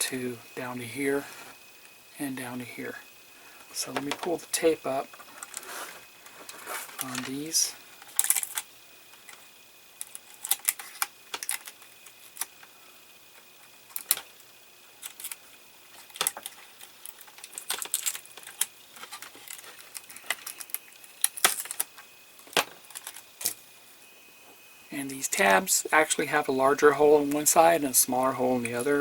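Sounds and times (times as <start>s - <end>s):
plastic parts clicking: 8.0s - 9.4s, 10.0s - 12.7s, 16.0s - 23.6s.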